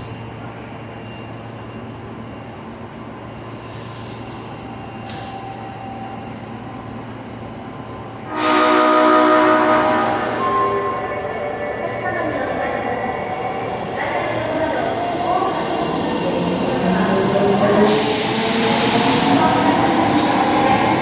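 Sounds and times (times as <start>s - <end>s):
train noise: 0.0s - 21.0s
train horn: 8.3s - 11.6s.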